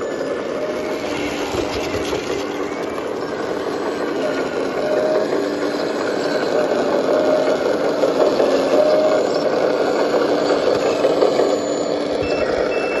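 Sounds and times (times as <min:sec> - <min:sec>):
bulldozer engine running: 0:00.0 - 0:13.0.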